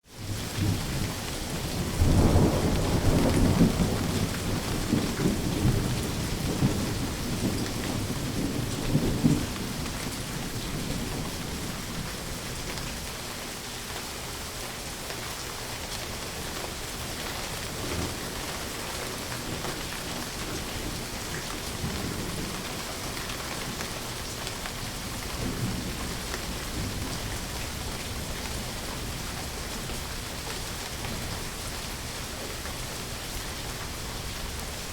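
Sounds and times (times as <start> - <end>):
heavy rain: 0.0 - 34.9
rolling thunder: 0.3 - 12.4.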